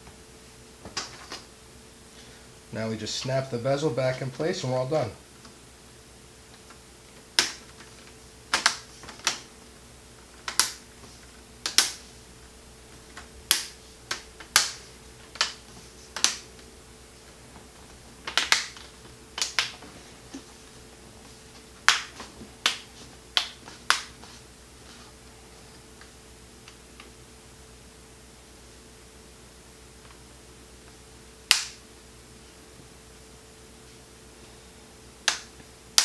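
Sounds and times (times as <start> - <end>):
plastic clips snapping: 7.4 - 9.4, 10.4 - 10.8, 11.6 - 12.0, 13.1 - 15.6, 16.2 - 16.4, 18.2 - 20.4, 31.5 - 31.8.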